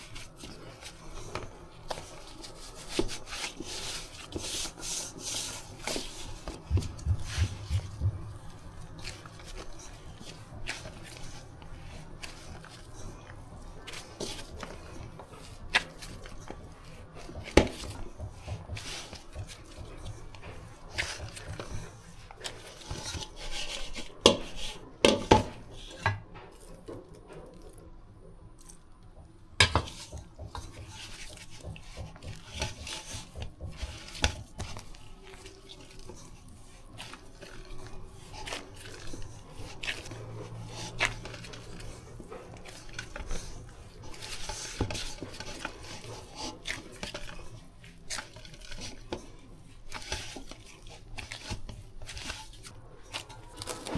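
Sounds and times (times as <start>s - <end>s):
bowl and utensils knocking and scraping: 29.6s - 34.9s.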